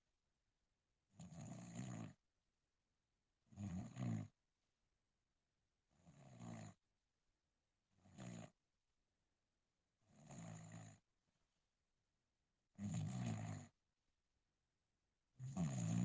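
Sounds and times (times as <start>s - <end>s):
person snoring: 12.8s - 13.7s, 15.4s - 16.0s.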